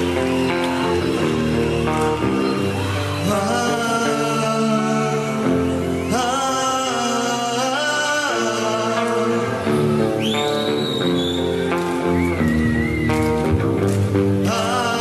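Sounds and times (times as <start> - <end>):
person singing: 3.0 - 10.0, 14.4 - 15.0.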